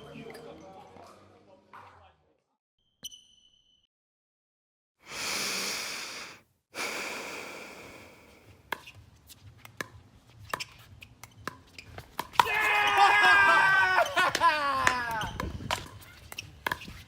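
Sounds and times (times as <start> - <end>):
ball bouncing on court: 9.6 - 12.6, 14.3 - 17.0.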